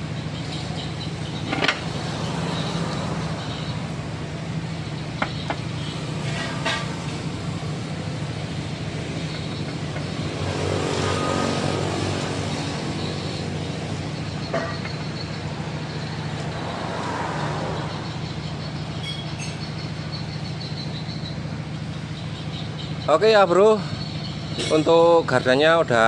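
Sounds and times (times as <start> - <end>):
motor traffic hum: 0.0 - 26.0.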